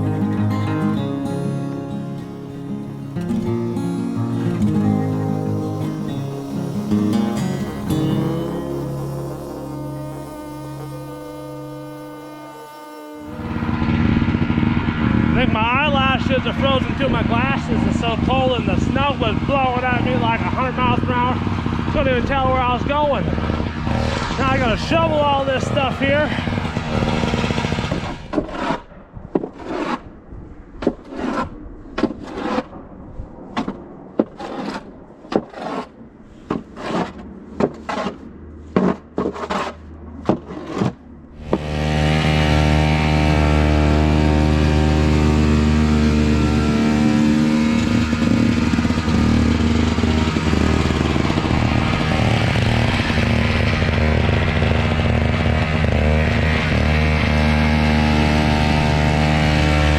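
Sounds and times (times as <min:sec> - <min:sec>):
snowblower engine running: 0:00.0 - 0:28.3, 0:41.3 - 0:59.9
snow shovel scraping pavement: 0:22.3 - 0:30.1, 0:30.8 - 0:32.7, 0:34.2 - 0:59.9.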